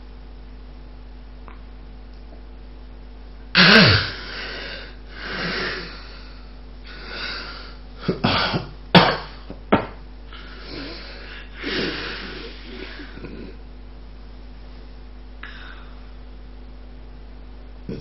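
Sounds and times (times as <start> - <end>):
sharp snorts: 3.6 - 6.2, 10.4 - 13.6
noisy breathing: 3.6 - 8.6, 10.3 - 13.6, 15.4 - 16.2
gasping snore: 10.4 - 13.6.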